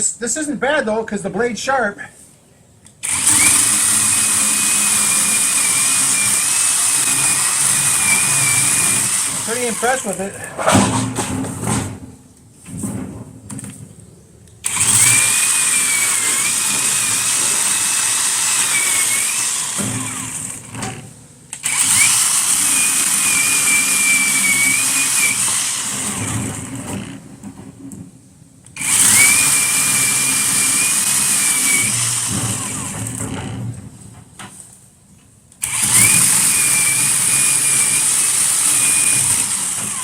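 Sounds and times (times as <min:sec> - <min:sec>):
electric chainsaw cutting wood: 0:03.0 - 0:10.4, 0:14.6 - 0:27.2, 0:28.8 - 0:33.7, 0:35.6 - 0:40.0.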